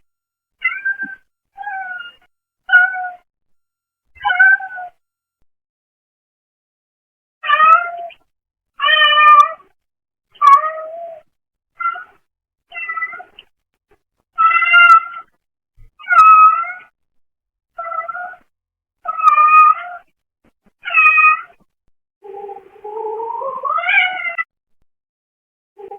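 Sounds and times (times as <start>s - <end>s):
cat meowing: 0.6s - 3.2s, 4.2s - 5.0s, 7.4s - 8.2s, 8.8s - 9.6s, 10.4s - 13.3s, 14.4s - 15.3s, 16.0s - 16.9s, 17.8s - 18.5s, 19.1s - 20.1s, 20.8s - 21.6s, 23.5s - 24.5s.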